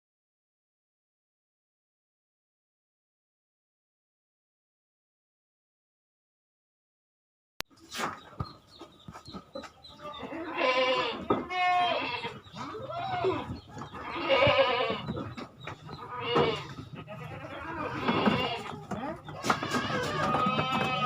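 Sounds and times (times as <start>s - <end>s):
goats bleating: 9.9s - 21.0s.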